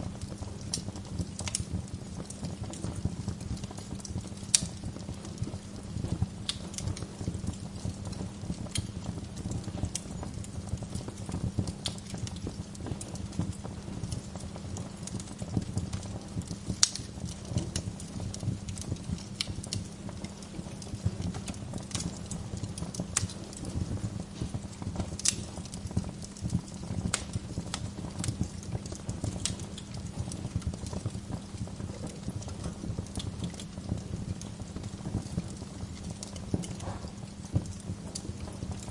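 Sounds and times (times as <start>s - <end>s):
fire flames rumbling: 0.0s - 38.9s
logs crackling and popping: 0.0s - 38.9s.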